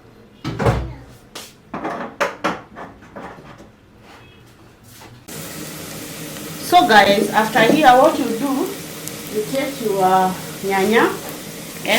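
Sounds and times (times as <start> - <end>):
kitchen knocks and clanks: 0.4 - 1.1, 1.7 - 3.8, 7.6 - 8.1.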